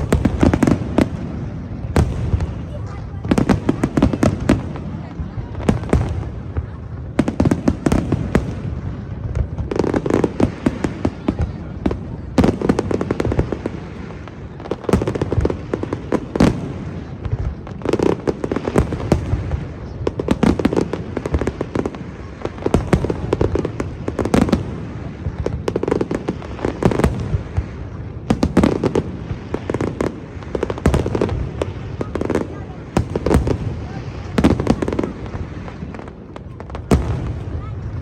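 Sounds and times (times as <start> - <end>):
fireworks bangs and crackling: 0.0 - 38.0.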